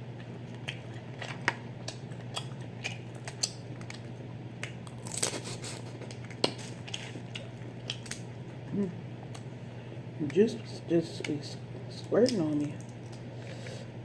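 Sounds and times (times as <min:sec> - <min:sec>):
steady low hum: 0:00.0 - 0:14.0
wet smacking and chewing: 0:00.1 - 0:09.5
shells cracked and peeled: 0:01.2 - 0:07.2, 0:07.8 - 0:08.3.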